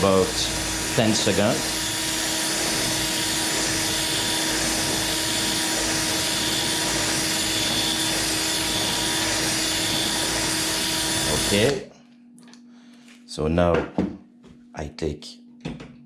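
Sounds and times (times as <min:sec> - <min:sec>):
electric drill running: 0:00.0 - 0:11.8.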